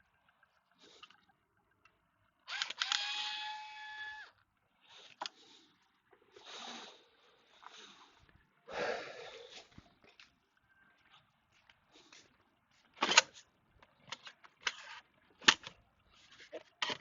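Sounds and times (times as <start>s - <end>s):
scraping and rustling of parts: 11.8s - 17.0s.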